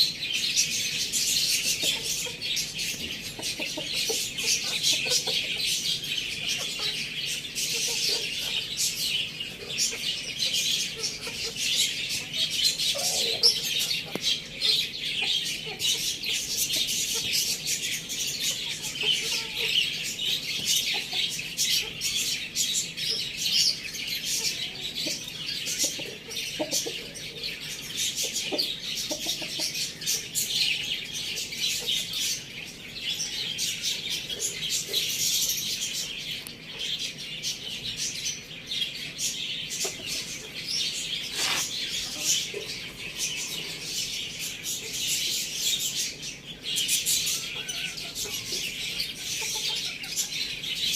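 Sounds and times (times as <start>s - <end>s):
small birds chirping: 0.0s - 50.9s.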